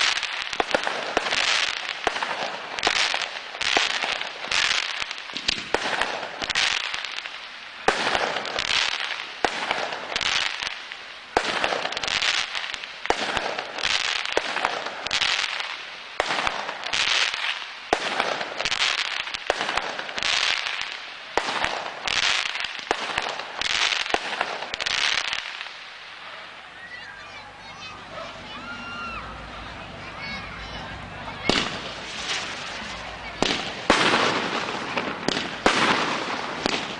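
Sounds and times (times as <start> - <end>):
fireworks cracking and crackling: 0.0 - 36.9.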